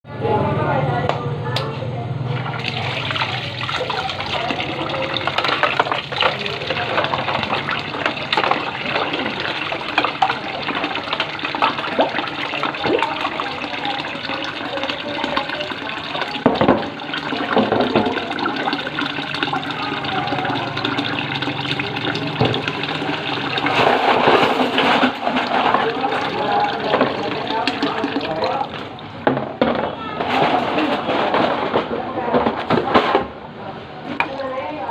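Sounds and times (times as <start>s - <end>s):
water running: 2.3s - 29.2s
dishes and utensils clattering: 2.5s - 18.7s, 19.9s - 28.4s, 29.2s - 33.3s.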